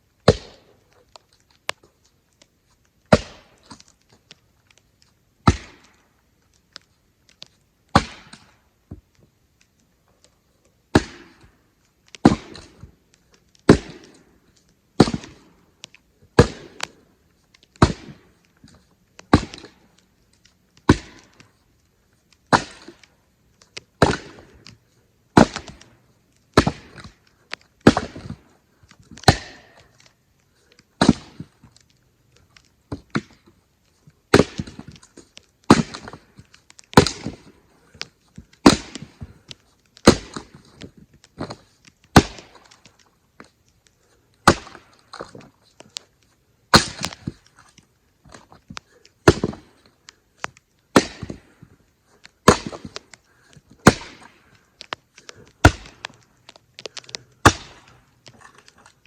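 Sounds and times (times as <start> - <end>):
axe splitting firewood: 0.2 - 1.8, 3.0 - 9.1, 10.8 - 33.6, 34.2 - 59.0.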